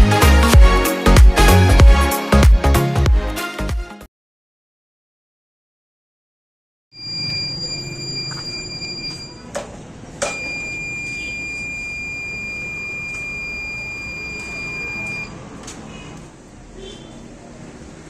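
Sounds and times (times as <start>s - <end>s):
buzzer high-pitched tone: 7.0s - 9.5s, 10.2s - 15.4s.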